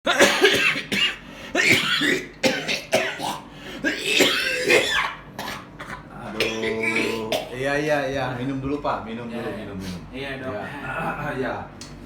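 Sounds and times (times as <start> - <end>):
man coughing hard: 0.1 - 7.7.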